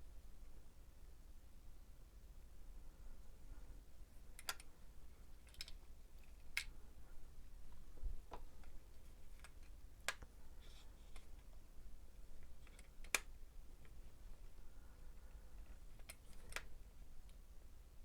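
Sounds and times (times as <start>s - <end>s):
small plastic parts clicking: 4.4s - 4.7s, 5.4s - 6.7s, 8.6s - 10.3s, 12.4s - 14.0s, 16.0s - 16.7s.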